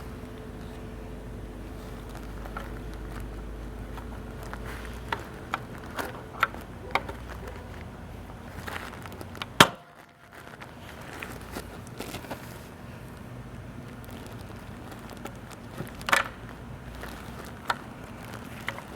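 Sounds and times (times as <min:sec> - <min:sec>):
car engine idling: 0:00.0 - 0:09.7.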